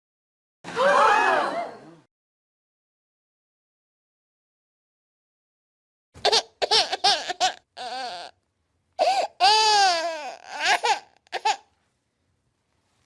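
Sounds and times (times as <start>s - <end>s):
baby crying: 6.3s - 8.4s, 9.0s - 11.7s.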